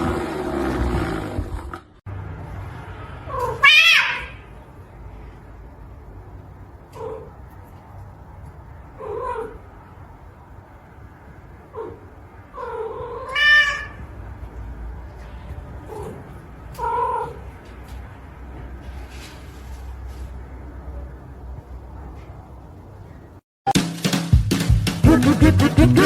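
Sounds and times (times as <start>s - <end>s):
cat meowing: 3.3s - 4.5s, 11.8s - 14.1s.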